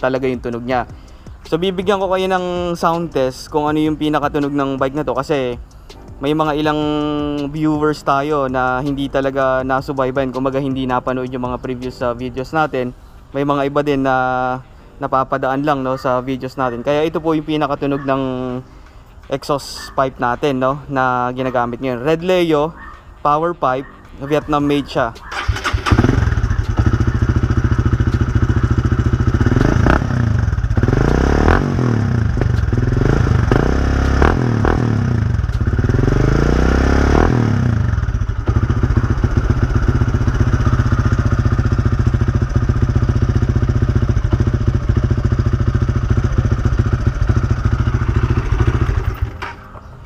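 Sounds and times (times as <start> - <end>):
motorcycle engine idling and revving: 0.0 - 12.8, 23.9 - 50.0.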